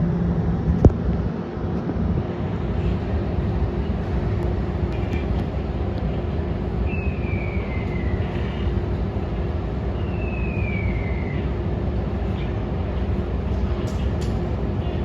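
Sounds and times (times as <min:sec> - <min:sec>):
low mechanical rumble with hum: 0:00.0 - 0:15.0.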